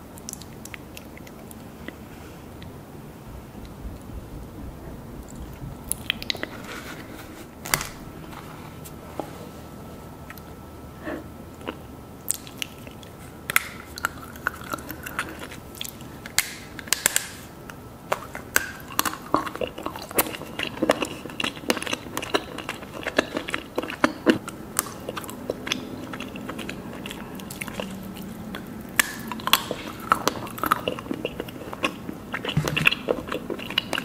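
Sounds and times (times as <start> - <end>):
biting and chewing cake: 11.5 - 34.0.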